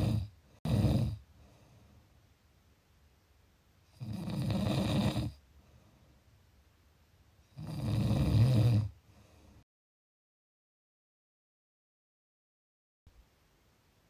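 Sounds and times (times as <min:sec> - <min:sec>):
person snoring: 0:00.0 - 0:01.2, 0:04.0 - 0:05.4, 0:07.6 - 0:09.0.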